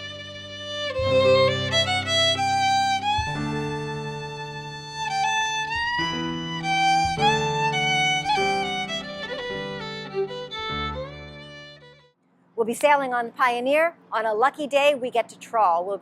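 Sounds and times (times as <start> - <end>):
held lower chords: 0.0 - 12.0
plucked string accompaniment: 0.0 - 12.1
fiddle melody: 0.0 - 12.2.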